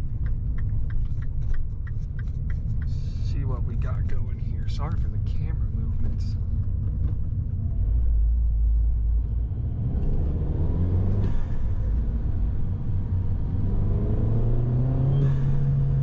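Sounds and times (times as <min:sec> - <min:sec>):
car engine accelerating: 0:05.3 - 0:16.0.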